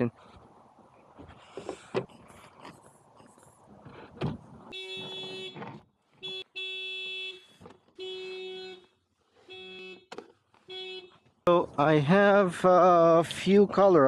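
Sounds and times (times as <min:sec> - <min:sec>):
car horn honking: 0:04.7 - 0:11.3.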